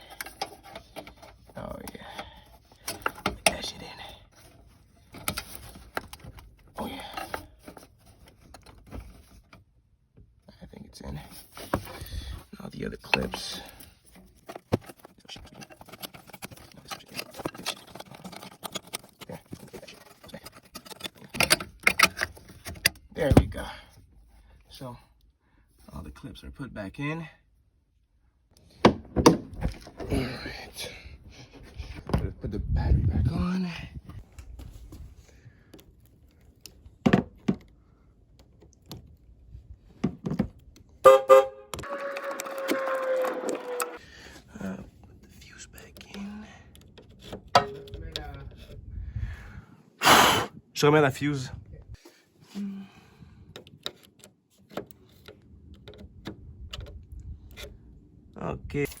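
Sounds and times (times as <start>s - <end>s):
plastic trim scratching and rubbing: 14.2s - 22.8s
car horn toots: 41.0s - 44.0s.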